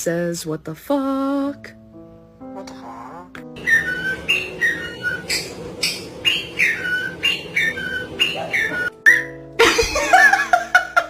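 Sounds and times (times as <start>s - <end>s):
low background music: 0.0s - 11.0s
noisy burst: 3.6s - 8.9s
parrot whistling two-note phrase: 3.6s - 9.4s.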